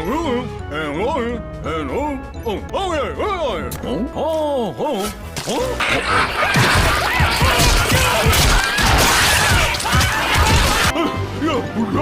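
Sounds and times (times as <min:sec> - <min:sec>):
cartoon crashing commotion: 0:05.8 - 0:10.9.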